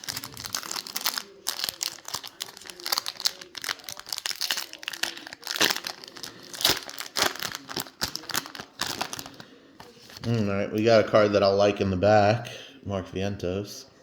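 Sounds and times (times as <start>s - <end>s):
foil wrapper crinkling and tearing: 0.0s - 10.5s.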